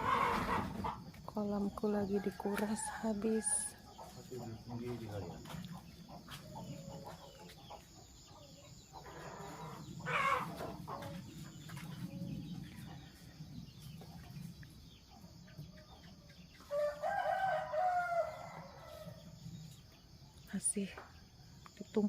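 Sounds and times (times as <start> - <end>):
rooster crowing: 0.0 - 0.9, 16.7 - 19.3.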